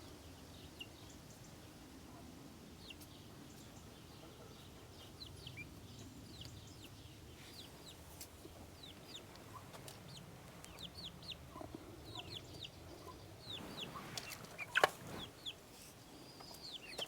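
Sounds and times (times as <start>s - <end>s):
birds chirping: 3.4s - 17.0s.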